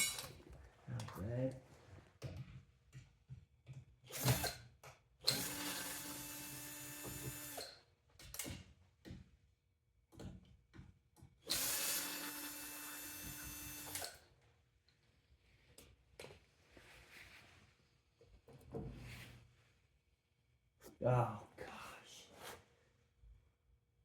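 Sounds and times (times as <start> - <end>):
power drill running: 5.2 - 7.7, 11.5 - 14.2.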